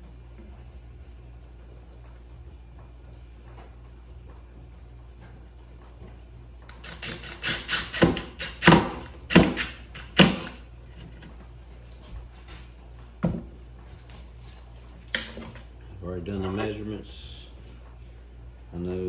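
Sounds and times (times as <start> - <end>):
cabinet door knocks and scrapes: 13.2 - 13.6.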